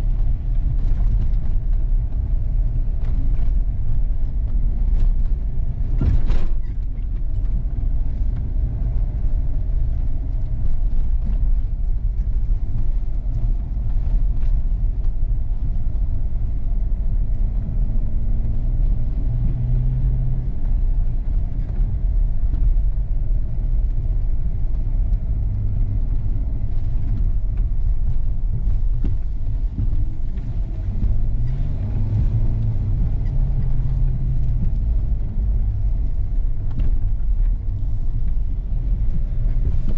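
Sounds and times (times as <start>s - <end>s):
vehicle engine and tyres rumbling: 0.0s - 39.9s.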